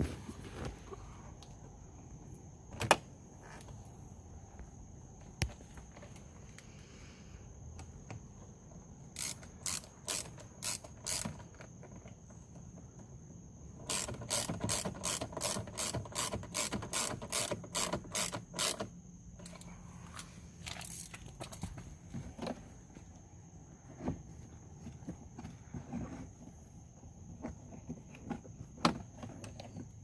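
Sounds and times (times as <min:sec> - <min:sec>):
hand ratchet clicking: 0:09.2 - 0:11.5, 0:13.9 - 0:18.9.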